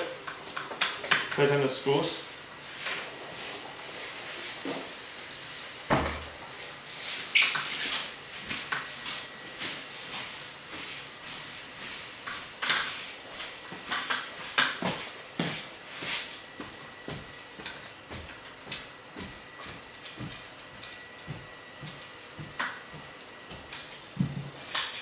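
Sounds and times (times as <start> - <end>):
heavy thump: 5.9 - 6.3.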